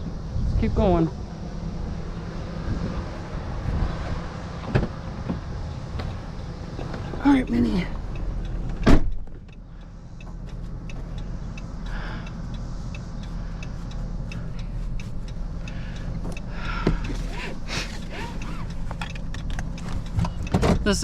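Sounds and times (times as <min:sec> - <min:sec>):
truck engine and road noise: 0:00.0 - 0:21.0
faint regular ticking: 0:05.7 - 0:21.0.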